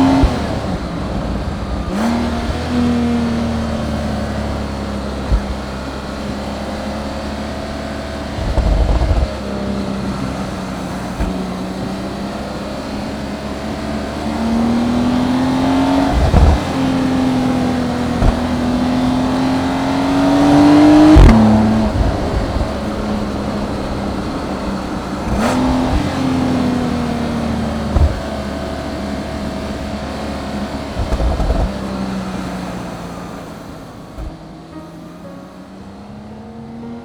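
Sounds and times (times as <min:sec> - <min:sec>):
car engine accelerating: 0:00.0 - 0:37.0
gear change click: 0:17.6 - 0:18.8.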